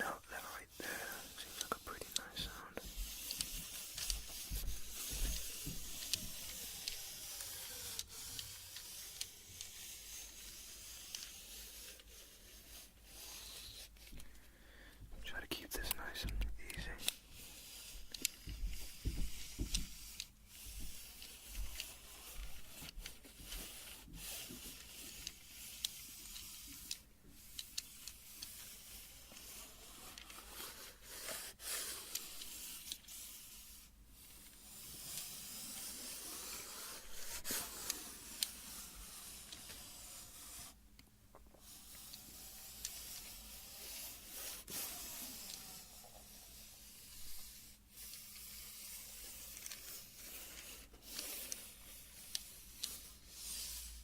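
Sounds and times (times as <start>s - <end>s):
tape measure rubbing: 0.8s - 14.2s, 17.0s - 40.8s, 41.6s - 54.0s.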